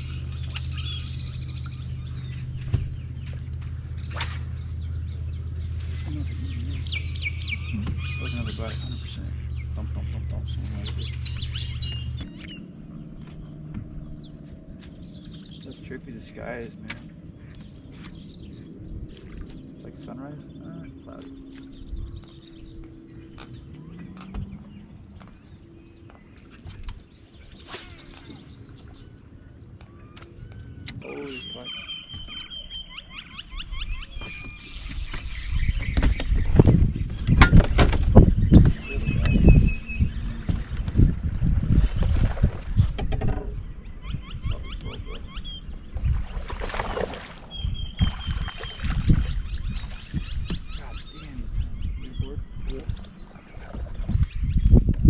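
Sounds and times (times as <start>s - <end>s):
water sounds: 0.0s - 30.5s, 34.1s - 51.6s
low hum: 0.0s - 31.1s, 32.0s - 55.0s
birds chirping: 0.0s - 55.0s
low thumps: 1.8s - 6.3s, 9.4s - 15.7s, 35.1s - 44.9s
low knocks from boat: 2.6s - 4.4s, 13.2s - 14.1s, 35.8s - 39.5s, 40.3s - 41.4s, 42.0s - 43.7s, 46.0s - 50.8s.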